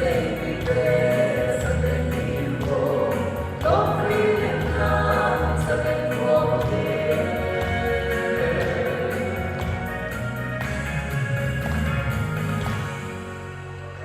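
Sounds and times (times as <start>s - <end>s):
group of singers: 0.0s - 10.4s
band accompaniment with bass: 0.0s - 14.0s.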